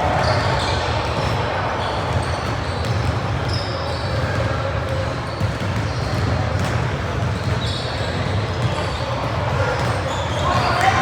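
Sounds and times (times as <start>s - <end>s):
shoe squeaks: 7.4s - 9.0s.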